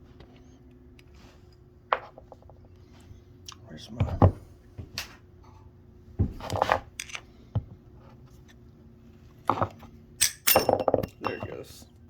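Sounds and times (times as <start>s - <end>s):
faint steady hum: 0.0s - 12.0s
metal parts clicking and clattering: 10.2s - 10.8s.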